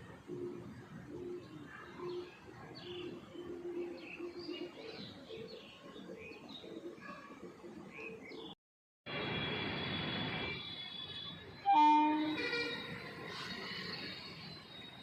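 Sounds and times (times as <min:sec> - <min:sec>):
low cooing bird calls: 0:00.3 - 0:08.4.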